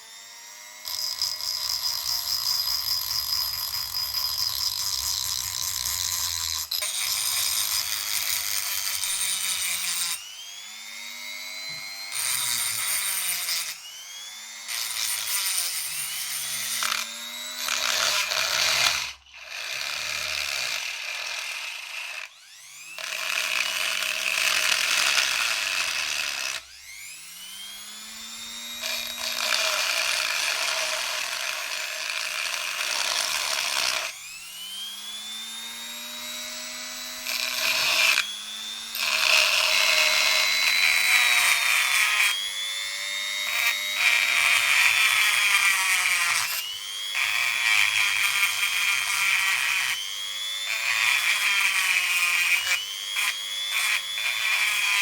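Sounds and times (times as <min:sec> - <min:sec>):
power tool on metal: 0:00.0 - 0:55.0.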